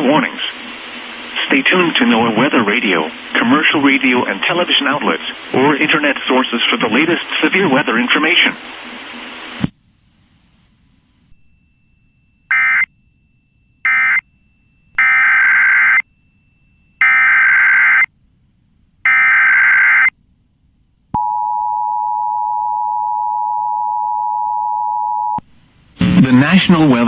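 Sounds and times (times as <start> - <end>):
alert data bursts: 11.4 - 13.2, 13.8 - 14.3.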